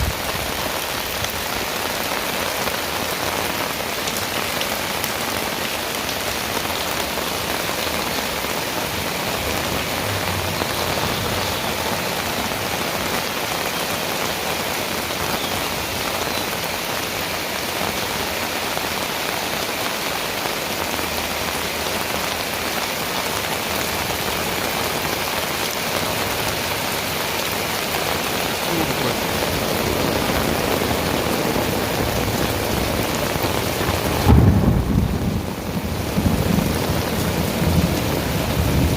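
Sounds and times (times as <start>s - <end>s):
heavy rain falling: 0.0s - 38.9s
low rumble of thunder: 34.2s - 38.9s.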